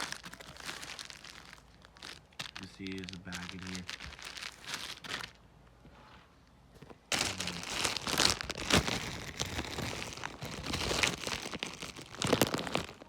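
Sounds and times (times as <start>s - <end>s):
plastic bag crinkling: 0.0s - 5.4s, 7.1s - 13.0s.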